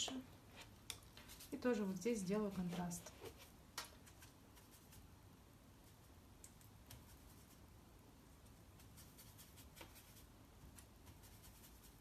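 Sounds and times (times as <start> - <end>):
paintbrush scratching paper: 0.5 - 5.1, 6.9 - 7.7, 8.7 - 12.0.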